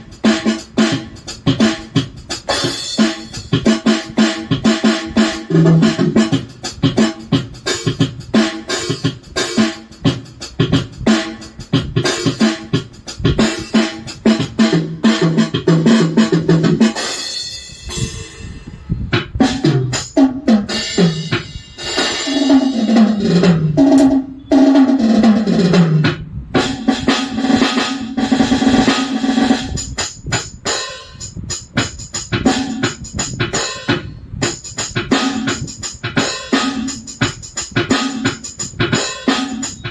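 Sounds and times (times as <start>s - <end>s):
electronic drum pad playing: 0.0s - 39.9s.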